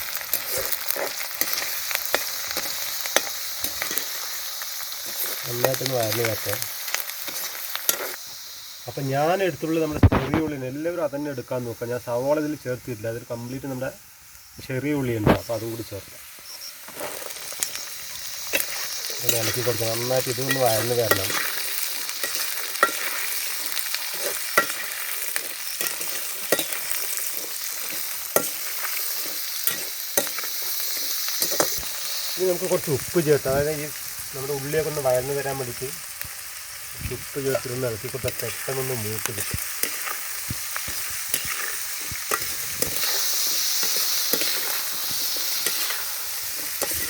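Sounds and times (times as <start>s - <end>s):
shallots sizzling in oil: 0.0s - 47.0s
spoon scraping against pan: 6.9s - 8.2s, 16.4s - 31.9s, 38.3s - 47.0s.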